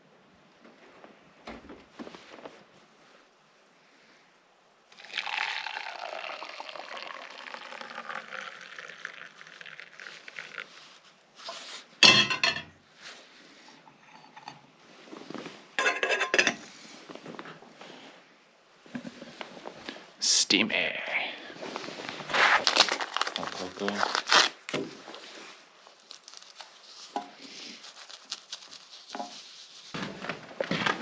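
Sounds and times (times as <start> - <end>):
coffee pouring into cup: 4.9 - 11.1
cup clinking and knocking: 12.0 - 12.8, 15.8 - 16.6.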